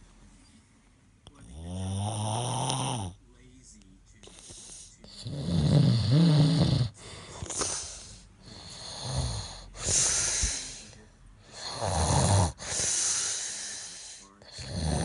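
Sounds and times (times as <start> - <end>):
person snoring: 1.4 - 3.2, 4.2 - 15.0
breathy breaths: 4.2 - 5.3, 6.8 - 15.0.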